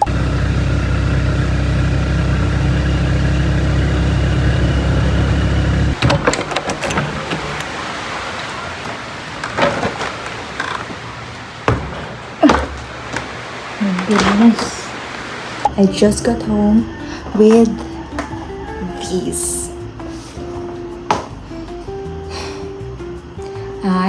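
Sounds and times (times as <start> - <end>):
vehicle engine humming: 0.0 - 23.8
street noise: 3.9 - 22.1
knocks and clatters: 5.9 - 15.7.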